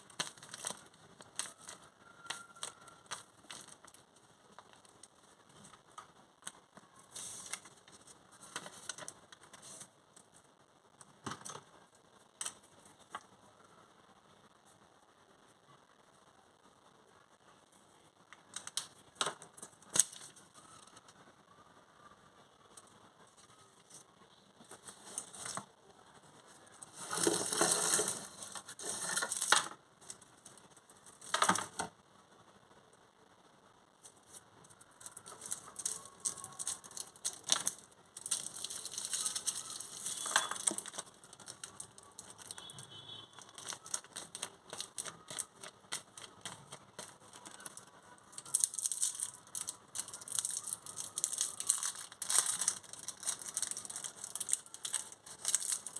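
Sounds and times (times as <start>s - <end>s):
packaging crinkling: 0.0s - 10.3s, 26.7s - 31.9s, 34.0s - 55.9s.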